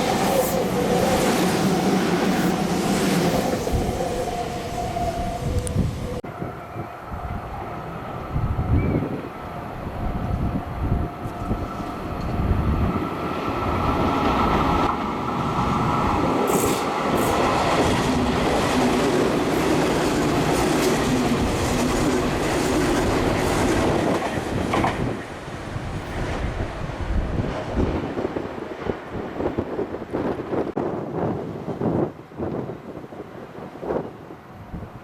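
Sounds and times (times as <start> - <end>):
train wheels clattering over rails: 14.5 - 25.2.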